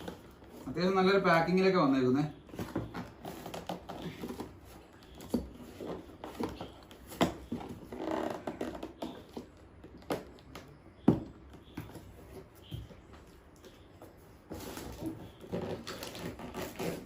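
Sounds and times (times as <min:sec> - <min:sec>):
cardboard box rustling: 0:02.4 - 0:09.6.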